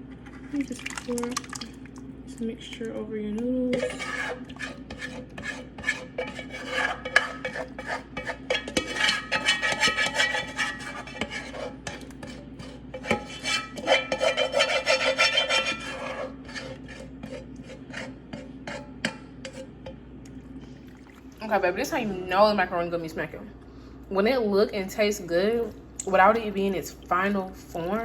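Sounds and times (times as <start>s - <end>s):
utensil stirring macaroni in a pan: 2.6s - 20.0s.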